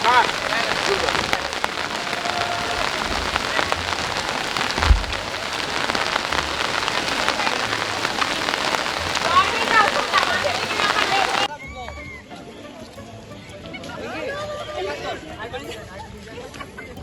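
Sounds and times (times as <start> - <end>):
heavy rain falling: 0.0 - 11.5
low thump: 4.7 - 6.1.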